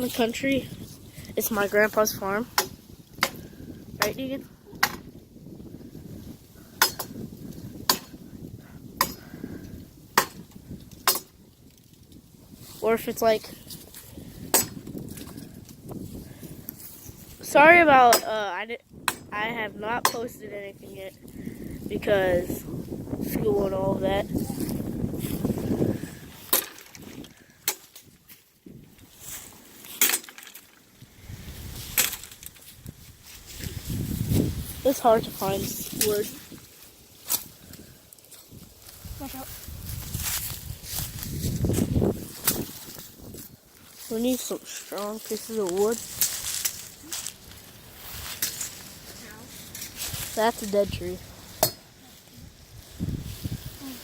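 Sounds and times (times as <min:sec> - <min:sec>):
wind rumbling on microphone: 0:00.0 - 0:29.7, 0:30.9 - 0:54.0
axe chopping wood: 0:02.6 - 0:03.4, 0:04.8 - 0:05.1, 0:06.8 - 0:07.2, 0:07.9 - 0:08.2, 0:09.0 - 0:09.2, 0:10.2 - 0:11.3, 0:14.5 - 0:14.9, 0:26.5 - 0:27.0, 0:27.6 - 0:27.9, 0:51.6 - 0:51.8.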